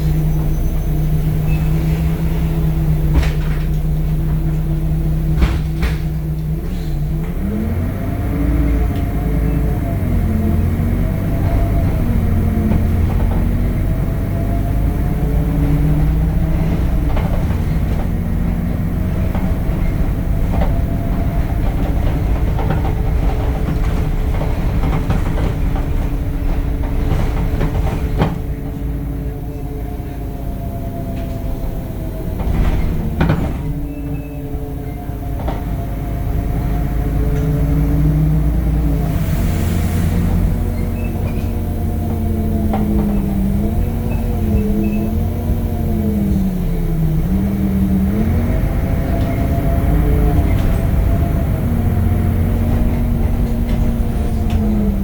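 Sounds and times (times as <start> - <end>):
bus engine rumble: 0.0 - 55.0
knocks and rattles: 10.2 - 29.2, 32.3 - 39.2.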